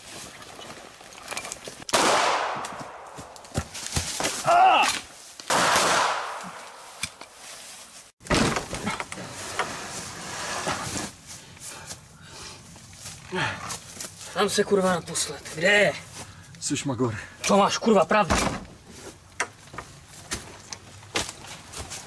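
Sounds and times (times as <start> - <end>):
loud bangs: 2.0 - 3.6, 5.5 - 6.9
man crying out in pain: 4.4 - 5.0.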